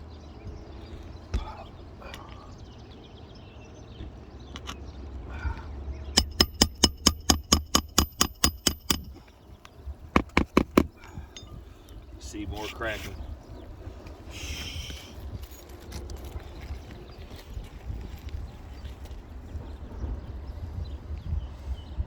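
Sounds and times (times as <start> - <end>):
hammer striking roofing nail: 6.2 - 9.2, 10.2 - 11.0.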